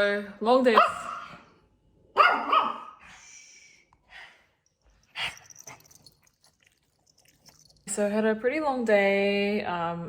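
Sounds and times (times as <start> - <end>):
dog barking: 0.8 - 1.4, 2.2 - 3.0.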